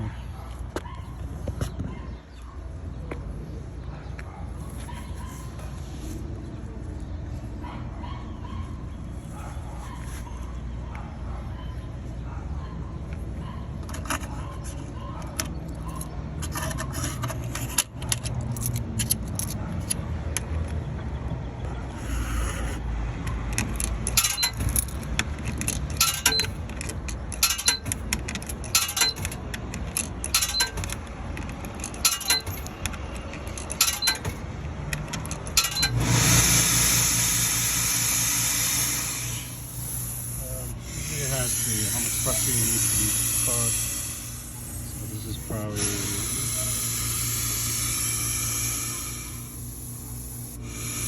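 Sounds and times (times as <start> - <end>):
air hissing: 21.9 - 22.8, 35.6 - 51.0
sharp metallic clicks: 23.2 - 51.0.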